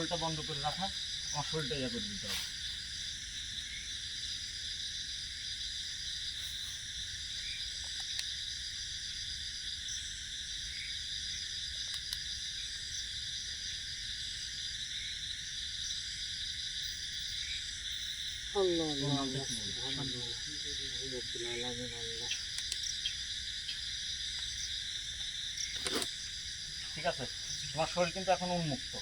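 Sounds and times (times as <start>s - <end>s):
crickets chirping: 0.0s - 29.0s
faint clicks: 22.4s - 22.9s.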